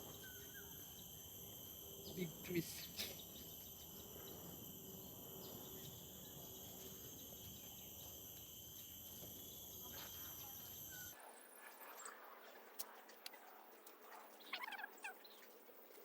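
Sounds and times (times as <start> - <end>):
insects buzzing: 0.0 - 11.2.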